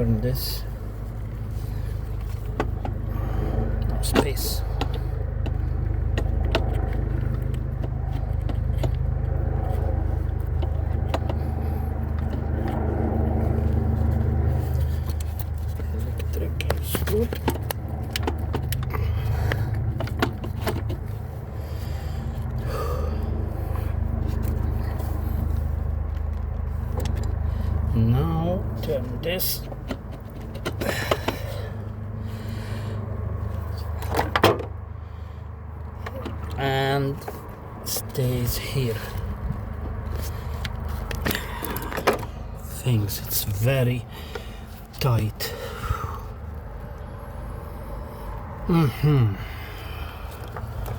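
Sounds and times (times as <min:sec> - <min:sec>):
steady low hum: 0:00.0 - 0:50.9
tools knocking on engine parts: 0:03.9 - 0:09.6, 0:10.4 - 0:12.7, 0:29.6 - 0:31.7.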